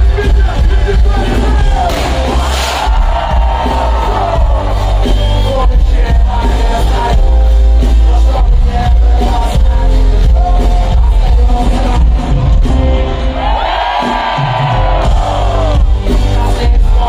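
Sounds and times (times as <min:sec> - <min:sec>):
hip-hop music with heavy bass: 0:00.0 - 0:17.0.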